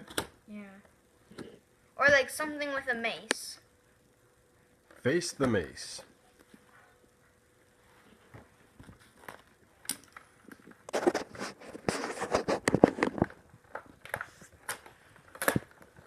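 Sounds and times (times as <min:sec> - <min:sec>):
plastic packaging clicks and crackles: 0:08.8 - 0:16.0.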